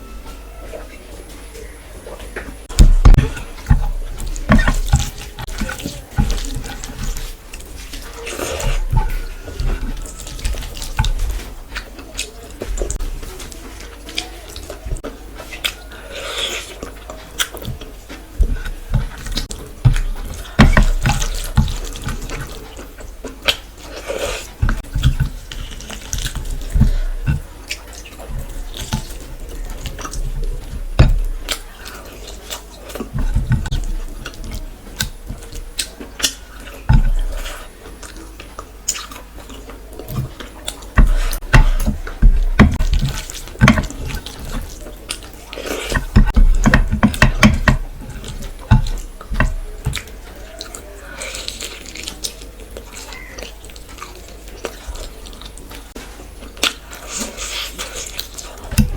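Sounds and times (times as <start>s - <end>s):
wet chewing: 0.0s - 58.9s
soft low thumps: 2.6s - 7.5s.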